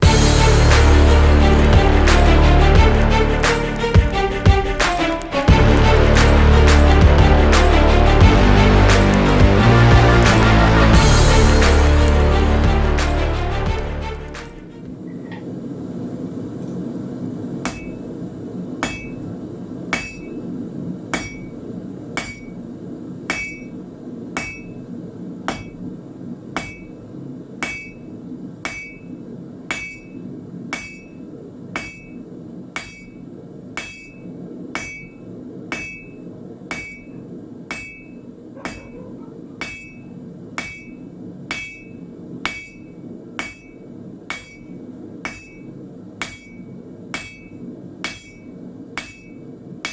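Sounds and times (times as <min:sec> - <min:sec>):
steady low rush: 0:00.0 - 0:14.8
hammer striking iron on anvil: 0:17.6 - 0:18.0, 0:18.8 - 0:19.2, 0:19.9 - 0:20.4, 0:21.1 - 0:21.5, 0:22.2 - 0:22.6, 0:23.3 - 0:23.7, 0:24.4 - 0:24.8, 0:26.6 - 0:26.9, 0:27.6 - 0:28.0, 0:28.6 - 0:29.0, 0:29.7 - 0:31.2, 0:31.8 - 0:32.2, 0:32.8 - 0:33.2, 0:33.8 - 0:34.2, 0:34.8 - 0:37.1, 0:37.7 - 0:38.1, 0:39.6 - 0:40.0, 0:40.6 - 0:45.6, 0:46.2 - 0:49.9.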